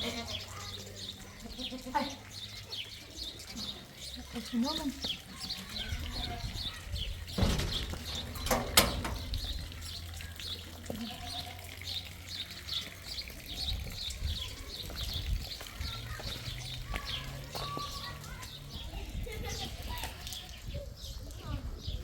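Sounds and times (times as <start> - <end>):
sheep and goats bleating: 0.0 - 0.6, 1.4 - 2.2, 4.3 - 6.7, 10.6 - 12.0.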